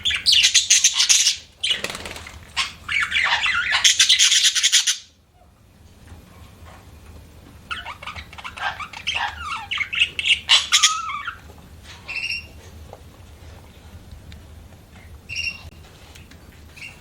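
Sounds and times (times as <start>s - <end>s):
budgerigars chattering: 0.0s - 5.2s, 7.7s - 11.4s
harsh bird squawk: 0.0s - 5.2s, 7.7s - 11.4s
faint low hum: 5.1s - 17.0s.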